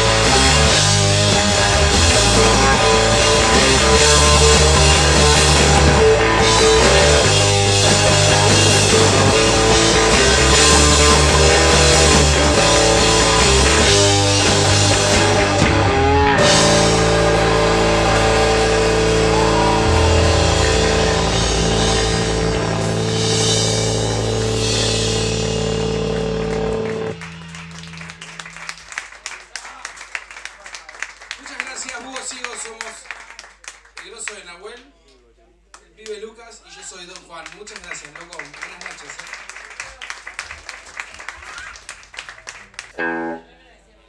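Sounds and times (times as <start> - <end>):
rock band playing live: 0.0 - 29.1, 42.9 - 43.5.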